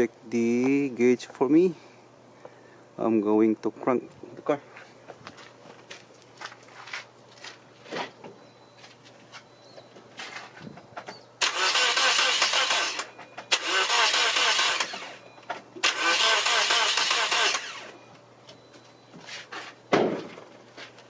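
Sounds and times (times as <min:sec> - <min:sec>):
engine cranking by starter: 0:11.4 - 0:15.2, 0:15.8 - 0:18.0.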